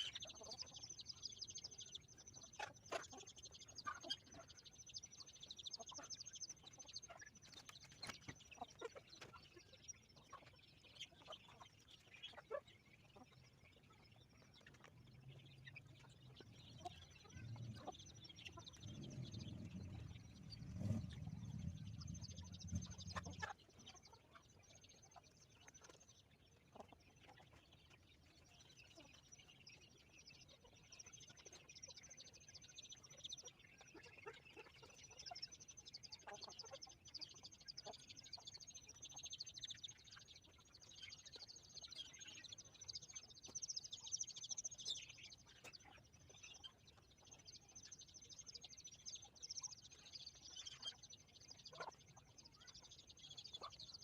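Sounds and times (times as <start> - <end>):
chickens clucking and chirping: 0.0 - 54.0
low rumble: 18.6 - 23.4.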